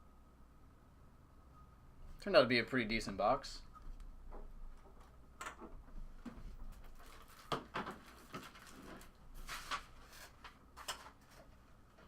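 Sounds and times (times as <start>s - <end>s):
cards and packaging rustling: 6.8s - 11.6s.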